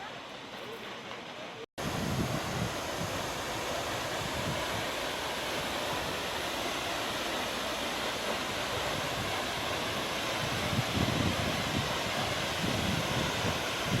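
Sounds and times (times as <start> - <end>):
waterfall rushing: 1.8 - 14.0.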